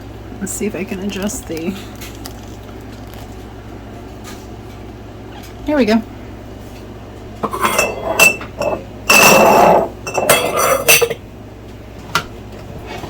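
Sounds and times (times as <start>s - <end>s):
glass and metal clinking: 7.4s - 11.2s.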